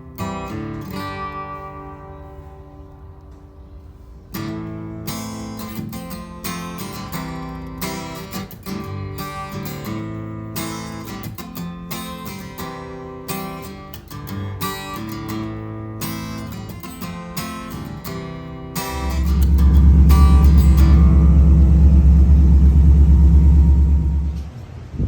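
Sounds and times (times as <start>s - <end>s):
strummed acoustic guitar music: 0.0s - 24.4s
loud low engine rumble: 18.7s - 25.0s.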